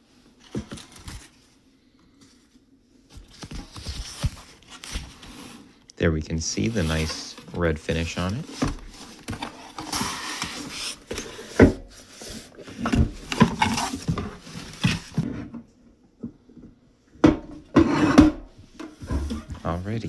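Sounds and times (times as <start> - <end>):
packaging rustling: 2.4 - 15.3.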